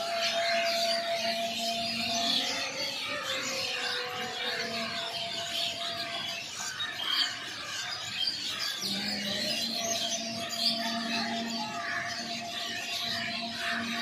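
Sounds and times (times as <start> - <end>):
songbirds chirping: 0.0 - 14.0
steady low hum: 8.9 - 14.0.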